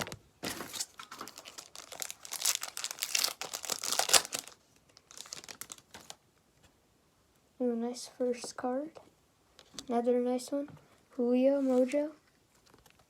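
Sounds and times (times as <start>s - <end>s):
plastic wrapper tearing and crinkling: 0.0s - 6.2s.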